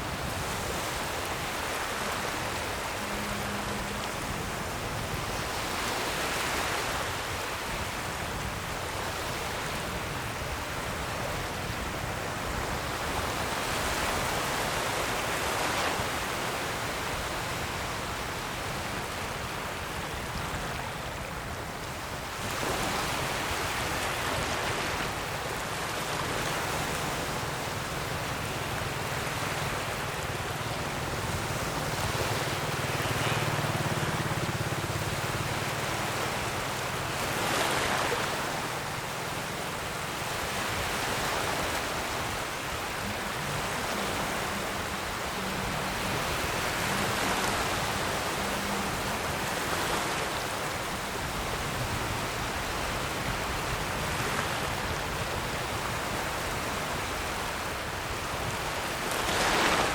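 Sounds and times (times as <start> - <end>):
ocean waves breaking on shore: 0.0 - 59.9.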